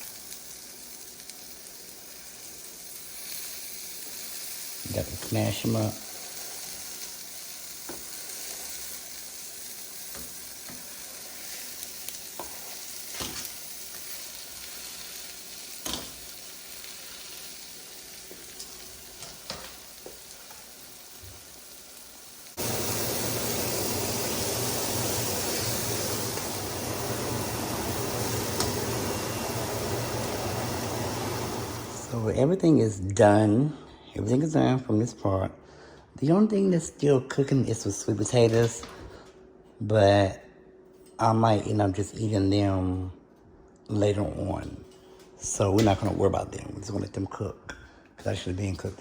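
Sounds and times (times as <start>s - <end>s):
meat sizzling in a frying pan: 0.0s - 32.2s.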